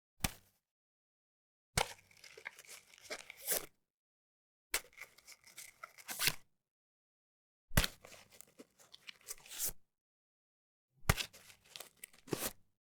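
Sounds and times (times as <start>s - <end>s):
paper rustling and rubbing: 2.1s - 3.6s.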